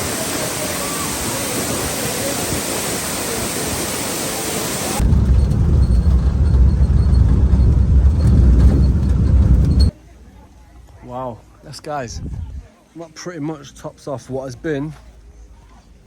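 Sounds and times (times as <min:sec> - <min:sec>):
waterfall rushing: 0:00.0 - 0:05.0
loud low rumble: 0:05.0 - 0:09.9.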